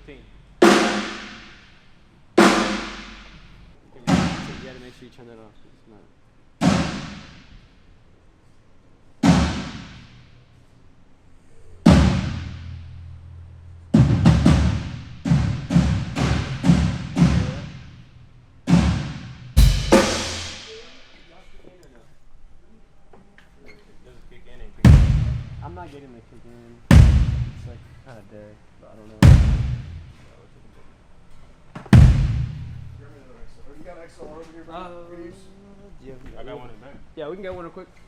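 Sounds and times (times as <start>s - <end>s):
drum hits ringing low: 0.6s - 1.6s, 2.4s - 4.8s, 6.6s - 7.6s, 11.9s - 21.3s, 24.9s - 25.9s, 26.9s - 28.0s, 29.2s - 30.2s, 31.9s - 33.2s.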